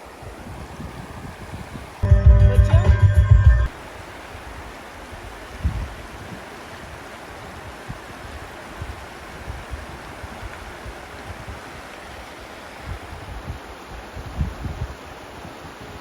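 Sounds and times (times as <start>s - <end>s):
running water of a stream: 0.0s - 2.1s, 3.7s - 16.0s
wind thuds on microphone: 0.0s - 2.4s, 3.7s - 12.2s, 12.8s - 16.0s.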